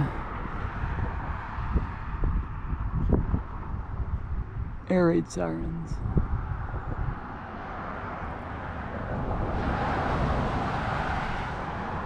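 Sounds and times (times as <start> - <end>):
low traffic rumble: 0.0 - 12.0
vehicle passing: 5.4 - 12.0.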